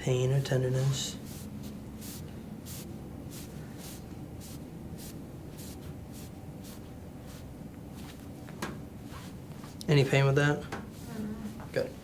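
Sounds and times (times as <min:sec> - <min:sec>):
low room hum: 0:00.0 - 0:12.0
hands rustling on clothing: 0:00.8 - 0:08.4, 0:09.0 - 0:09.8.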